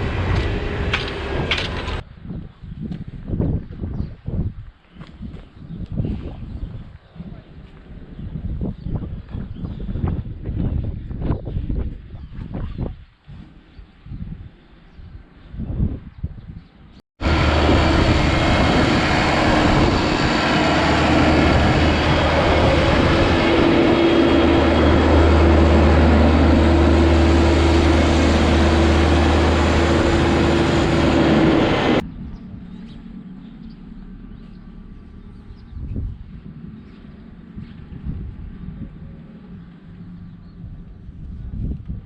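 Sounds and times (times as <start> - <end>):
tractor engine running: 0.0 - 2.0, 17.2 - 38.6.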